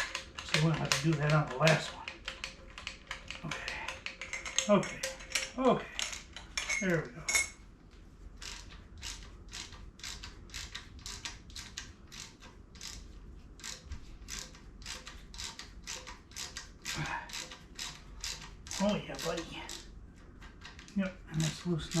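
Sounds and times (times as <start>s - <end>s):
socket ratchet clicking: 8.4s - 13.0s, 13.6s - 19.9s.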